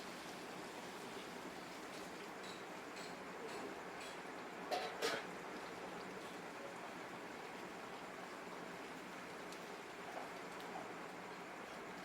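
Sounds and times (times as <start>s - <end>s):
room noise hiss: 0.0s - 12.0s
soft light ticks: 9.4s - 9.7s.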